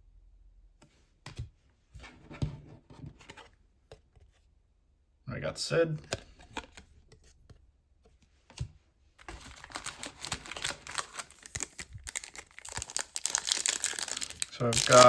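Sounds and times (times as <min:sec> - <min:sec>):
card pack wrapper crinkling: 0:09.3 - 0:15.0
trading cards clicking: 0:09.5 - 0:15.0.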